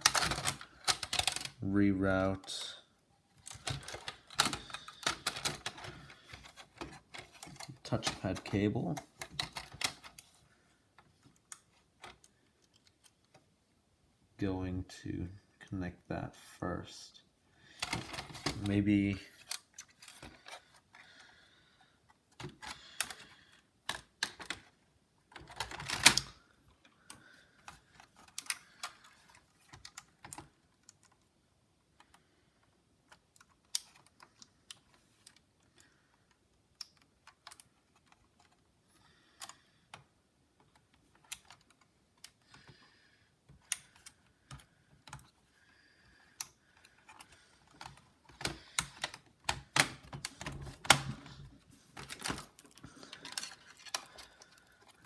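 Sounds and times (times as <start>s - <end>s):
plastic laptop parts clicking: 0.0s - 1.6s, 3.4s - 13.5s, 17.8s - 18.7s, 19.4s - 21.4s, 22.3s - 55.0s.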